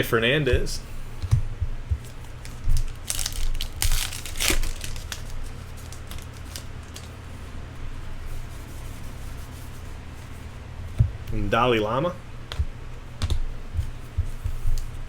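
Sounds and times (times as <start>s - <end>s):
cards rustling: 2.1s - 7.2s
foil wrapper tearing and crinkling: 2.1s - 7.2s.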